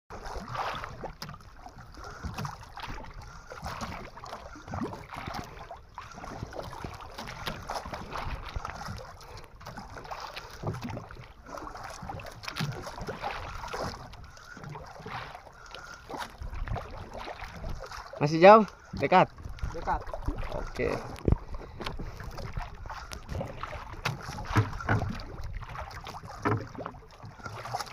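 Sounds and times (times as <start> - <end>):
water sloshing against boat: 0.1 - 27.9
wind on microphone: 19.3 - 25.7.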